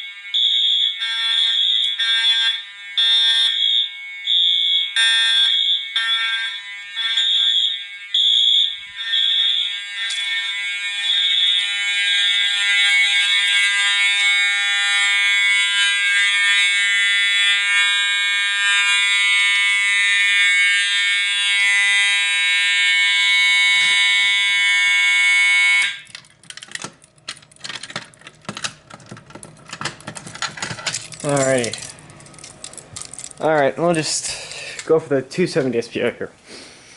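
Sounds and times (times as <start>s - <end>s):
fire alarm horns blaring: 0.0s - 35.6s
clicking and rattling: 26.0s - 33.7s.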